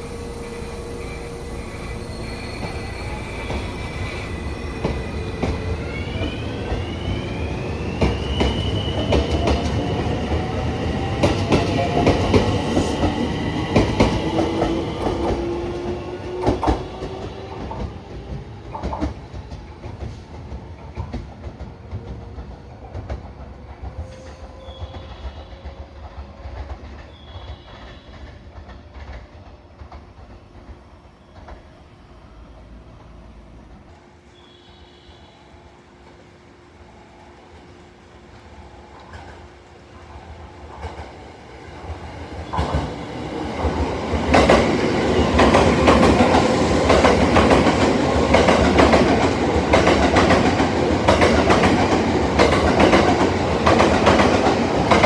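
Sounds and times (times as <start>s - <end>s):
electric train motor whine rising: 0.0s - 18.4s
train wheels clicking over rail joints: 3.4s - 22.2s, 41.8s - 55.0s.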